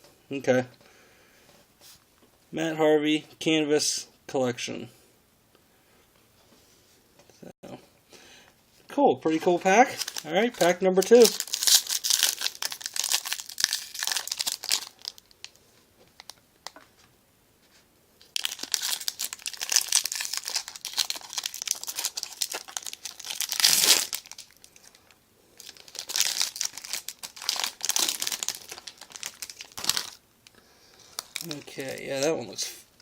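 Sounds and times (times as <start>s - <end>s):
card pack wrapper crinkling: 9.8s - 16.8s, 18.2s - 30.2s, 31.0s - 32.6s.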